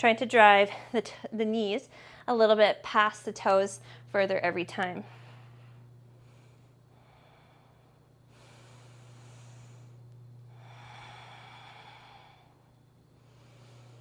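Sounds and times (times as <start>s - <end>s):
faint human breathing: 5.0s - 14.0s.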